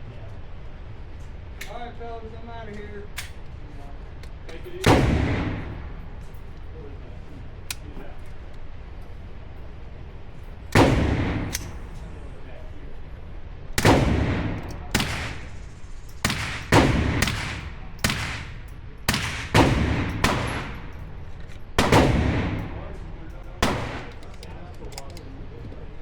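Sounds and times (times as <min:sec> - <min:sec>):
gunshots with echo: 0:04.8 - 0:06.2, 0:10.7 - 0:12.0, 0:13.8 - 0:21.2, 0:21.8 - 0:24.3.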